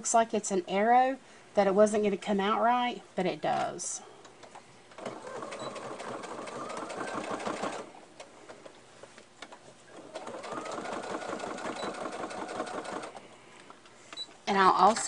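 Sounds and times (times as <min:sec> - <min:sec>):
electric sewing machine stitching: 0:05.0 - 0:07.9, 0:10.0 - 0:13.2.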